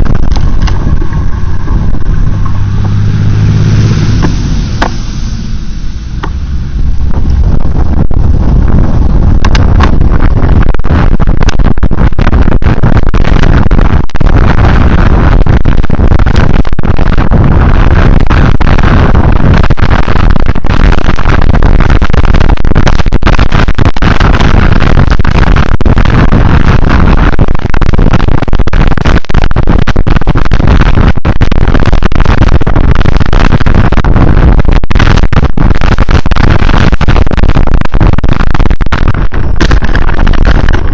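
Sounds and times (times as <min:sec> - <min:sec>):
vehicle running: 0:00.0 - 0:10.7
wind buffeting microphone: 0:00.0 - 0:40.9.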